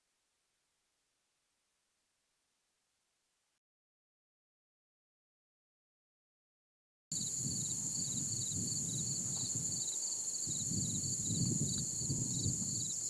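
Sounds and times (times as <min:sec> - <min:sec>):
insects chirping: 0:07.1 - 0:13.0.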